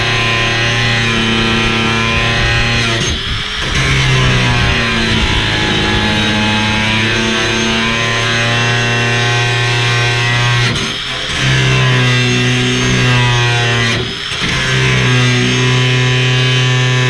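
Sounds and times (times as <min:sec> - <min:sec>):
sustained electric guitar chords: 0:00.0 - 0:10.8.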